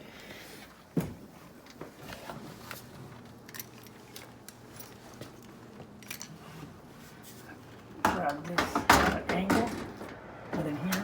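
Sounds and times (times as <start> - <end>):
clicks and rattles of metal parts: 3.4 - 6.4.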